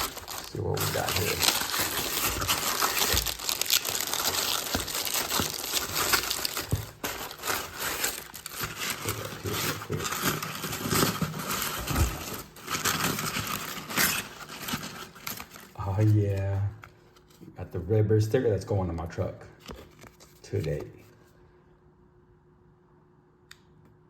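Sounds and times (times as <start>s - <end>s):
packaging crinkling and rustling: 0.0s - 16.8s.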